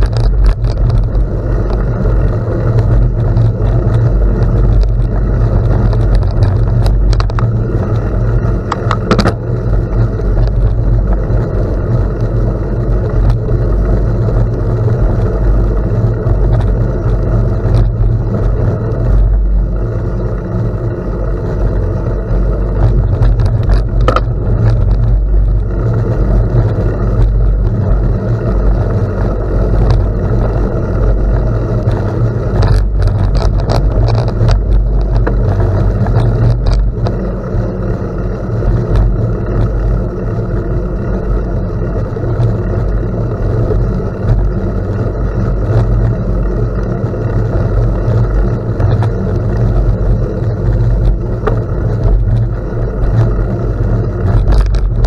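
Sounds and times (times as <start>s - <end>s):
bicycle rolling on gravel: 0.0s - 55.0s
wind rumble: 0.0s - 55.0s.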